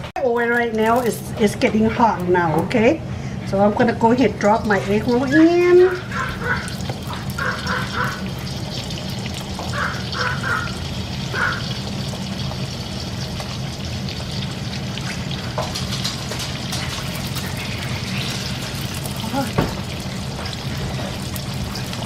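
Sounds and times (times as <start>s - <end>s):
egg rolls sizzling in oil: 5.2s - 22.0s.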